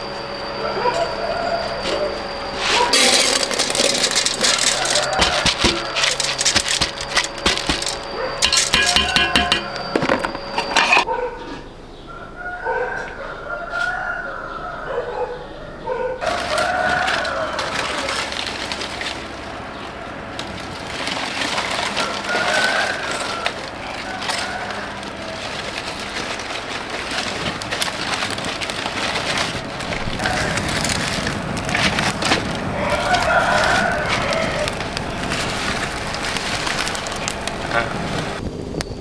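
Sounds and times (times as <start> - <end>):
rooster crowing: 0.6 - 11.0, 12.1 - 15.3, 16.2 - 18.4, 22.0 - 25.6, 32.4 - 35.3
rustling and clicks: 2.6 - 11.0, 20.4 - 38.9.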